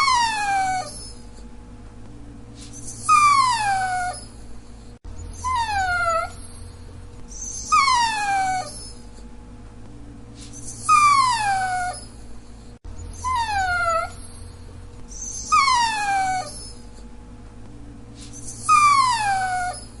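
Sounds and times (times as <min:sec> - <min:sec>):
dog whining: 0:00.0 - 0:01.4, 0:02.6 - 0:09.2, 0:10.4 - 0:17.1, 0:18.2 - 0:20.0.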